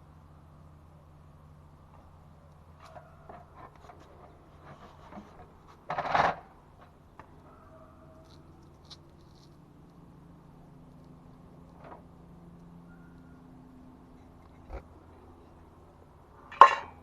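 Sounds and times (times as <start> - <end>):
low steady hum: 0.0 - 17.0
loud scraping rustle: 2.8 - 6.9
small handling clicks and rustles: 8.2 - 10.0.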